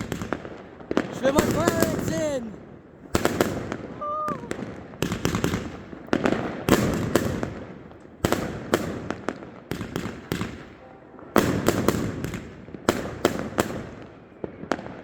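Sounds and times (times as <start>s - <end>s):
fireworks bangs echoing: 0.0s - 15.0s
rumble of distant fireworks: 0.0s - 15.0s.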